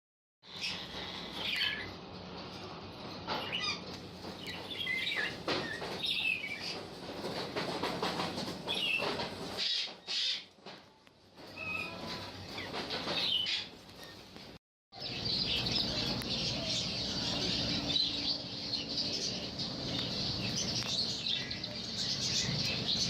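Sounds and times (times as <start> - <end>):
caged birds chirping: 0.4 - 23.0
rustling and wing flapping: 2.0 - 14.6.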